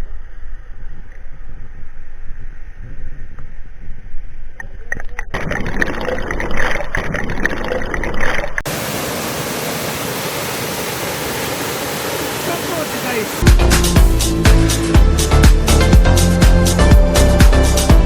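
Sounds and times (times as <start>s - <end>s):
waterfall rushing: 5.4s - 13.5s.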